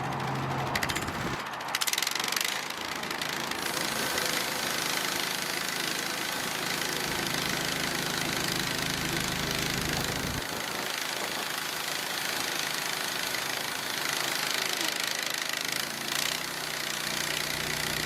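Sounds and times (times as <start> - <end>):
clicks and clatter: 0.0 - 3.7
gasoline engine running: 0.0 - 11.4.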